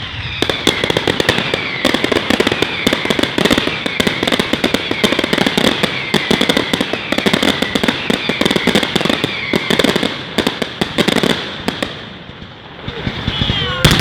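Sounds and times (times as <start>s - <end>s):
falling whistles: 0.0s - 10.0s, 12.8s - 14.0s
steady high whistling tone: 0.0s - 10.0s, 12.8s - 14.0s
fireworks bangs and crackles: 0.0s - 14.0s.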